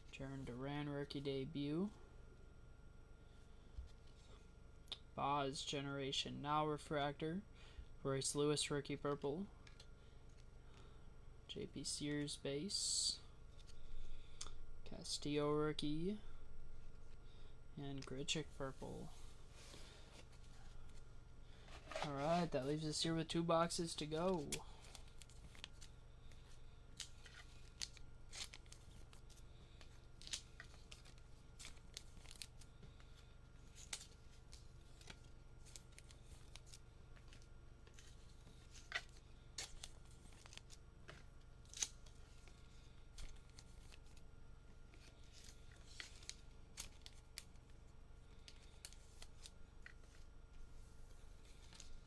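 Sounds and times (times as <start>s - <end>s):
trading cards and packaging rustling: 17.9s - 52.0s.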